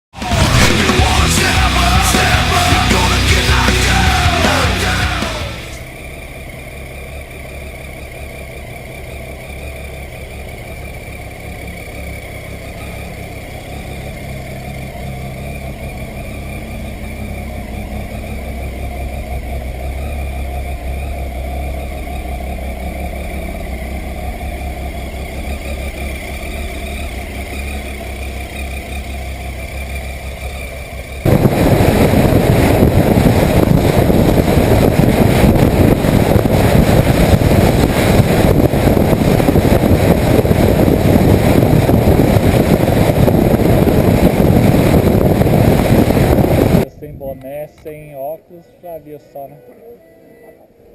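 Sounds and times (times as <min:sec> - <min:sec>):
motorcycle engine running: 0:00.0 - 0:50.9
loud rushing noise: 0:00.1 - 0:06.0, 0:31.2 - 0:46.9.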